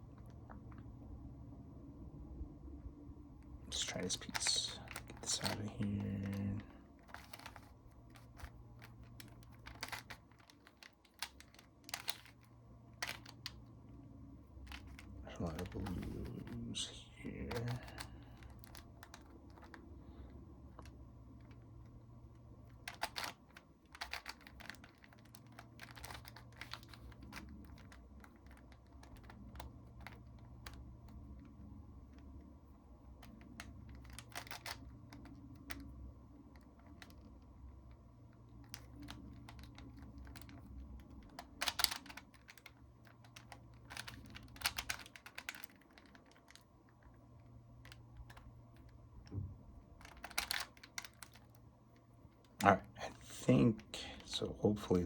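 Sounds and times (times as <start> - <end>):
steady low hum: 0.0 - 55.0
puzzle cube layers clicking: 3.8 - 13.6, 14.7 - 19.9, 22.7 - 31.5, 33.2 - 35.9, 38.6 - 47.1, 50.0 - 51.6.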